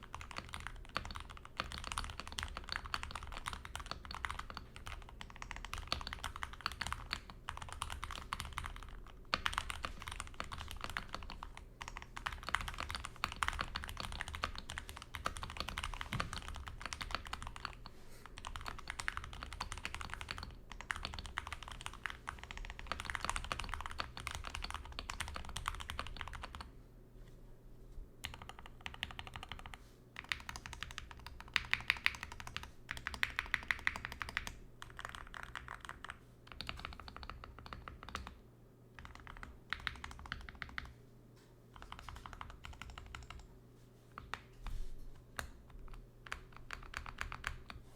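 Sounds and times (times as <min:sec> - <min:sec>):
mechanical keyboard typing: 0:00.0 - 0:26.7, 0:28.2 - 0:38.4, 0:39.0 - 0:40.9, 0:41.8 - 0:43.5, 0:45.4 - 0:47.8.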